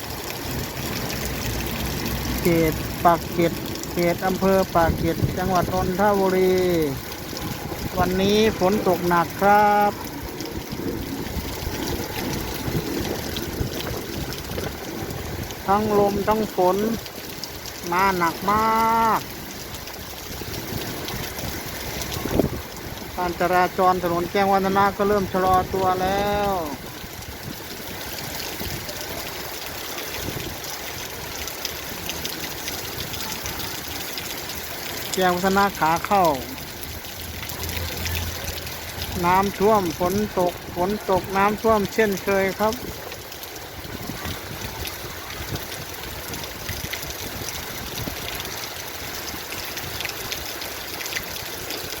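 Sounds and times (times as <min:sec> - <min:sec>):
heavy rain: 0:00.0 - 0:52.0
strong wind: 0:07.0 - 0:08.7, 0:09.6 - 0:15.8, 0:20.3 - 0:23.3, 0:30.1 - 0:31.2, 0:42.8 - 0:50.1.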